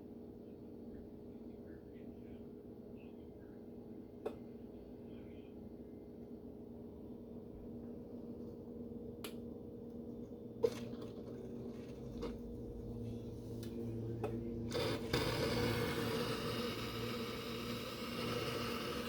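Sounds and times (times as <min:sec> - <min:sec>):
espresso machine hissing: 0:10.6 - 0:19.0
espresso machine humming: 0:10.6 - 0:19.0.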